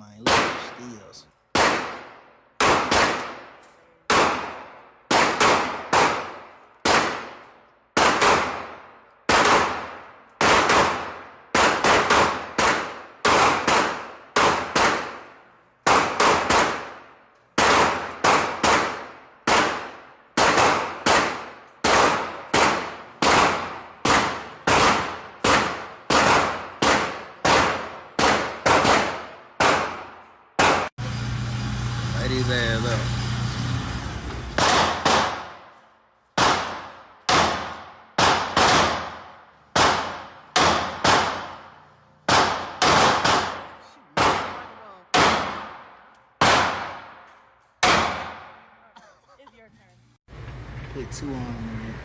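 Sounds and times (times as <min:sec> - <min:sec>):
echoing gunshots: 0:00.0 - 0:30.9, 0:34.6 - 0:35.8, 0:36.4 - 0:48.8.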